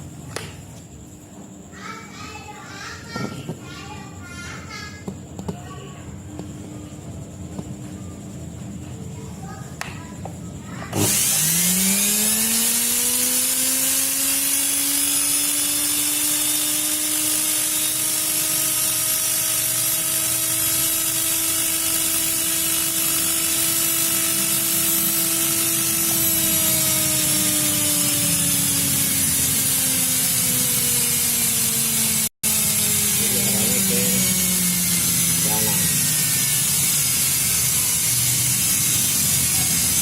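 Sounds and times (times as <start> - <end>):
electric motor whining: 10.9 - 40.0.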